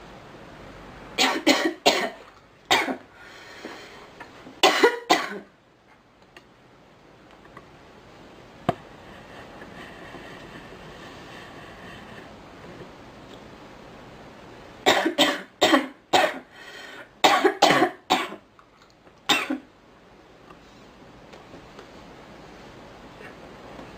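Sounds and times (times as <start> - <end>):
girl coughing: 1.2 - 3.0, 4.6 - 5.5, 14.9 - 16.5, 17.2 - 18.4, 19.3 - 19.7.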